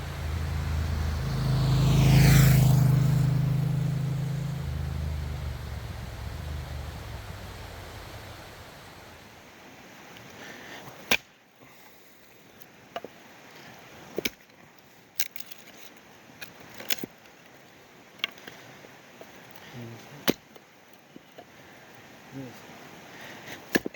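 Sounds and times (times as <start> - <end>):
low rumble: 0.0 - 9.3.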